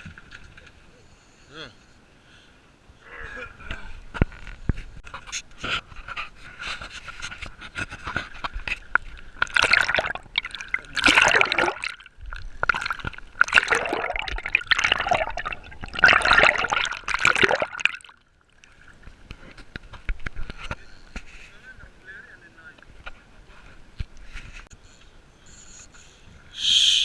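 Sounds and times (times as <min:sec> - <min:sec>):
water splashing and sloshing: 0:04.1 - 0:21.3.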